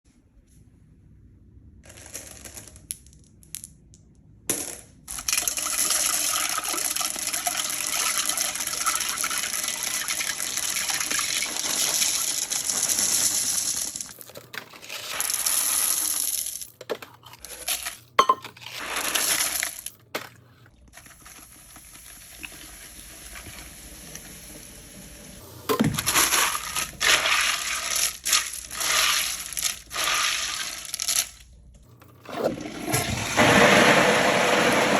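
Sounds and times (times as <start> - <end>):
candy clattering into toilet water: 1.8 - 24.7, 25.7 - 31.8.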